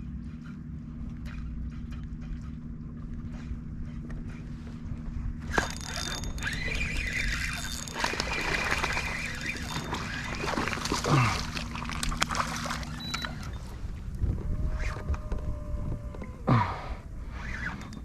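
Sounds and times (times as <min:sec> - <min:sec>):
water splashing at hull: 0:00.0 - 0:14.9
electric trolling motor humming: 0:00.0 - 0:18.0
short squeals: 0:05.6 - 0:11.5.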